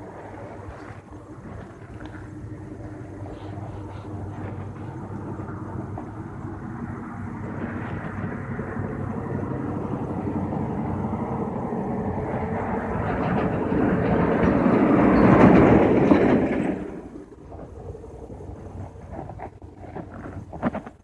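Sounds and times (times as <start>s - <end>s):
vehicle passing by rumbling: 0.0s - 20.5s.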